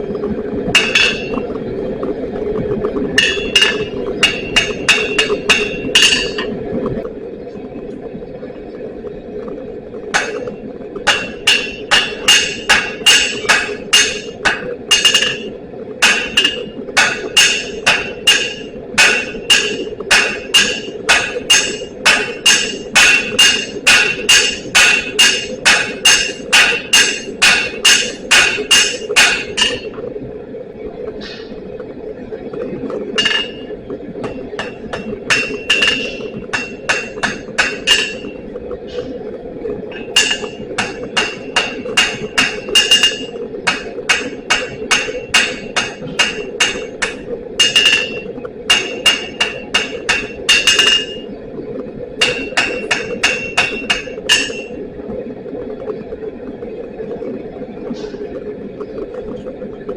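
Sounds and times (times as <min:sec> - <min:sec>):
steady hum: 0:00.0 - 0:59.9
hammer ringing on steel anvil: 0:16.0 - 0:29.8.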